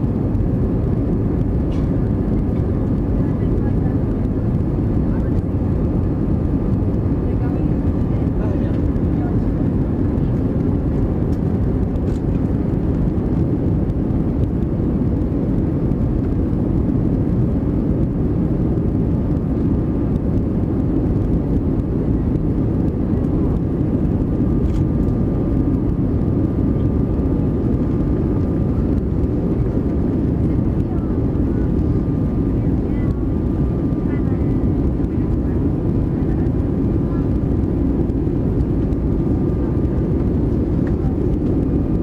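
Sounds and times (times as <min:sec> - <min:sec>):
airplane engines rumbling: 0:00.0 - 0:42.0.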